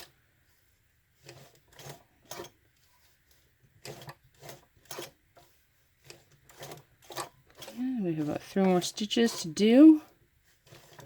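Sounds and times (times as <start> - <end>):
sewing machine clacks: 1.2 - 2.6, 3.8 - 5.1, 6.0 - 7.8.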